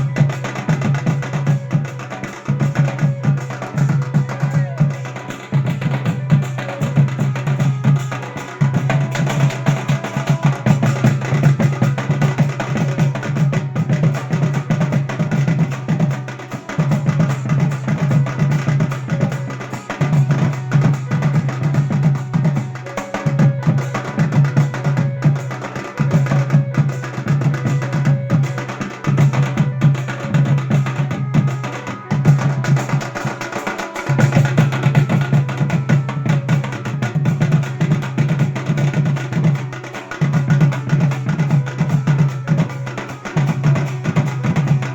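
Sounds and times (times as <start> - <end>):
band music: 0.0 - 12.1
drums steady beat: 0.0 - 44.9.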